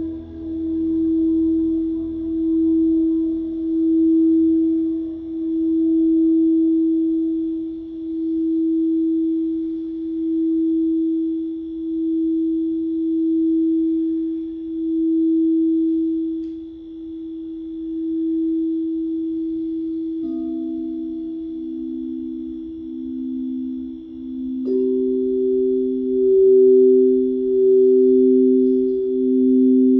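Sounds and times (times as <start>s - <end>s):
singing bowl tone: 0.0s - 29.9s.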